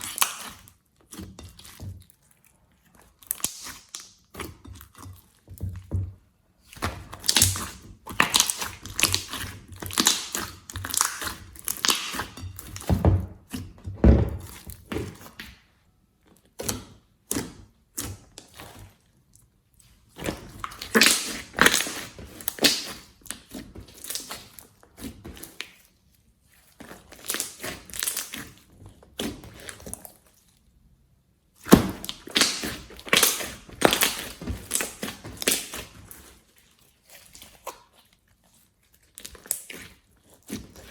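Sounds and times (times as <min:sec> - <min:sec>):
slime crackling and popping: 0:03.2 - 0:04.3, 0:06.8 - 0:12.9, 0:20.4 - 0:24.6, 0:27.0 - 0:28.6, 0:31.6 - 0:36.2.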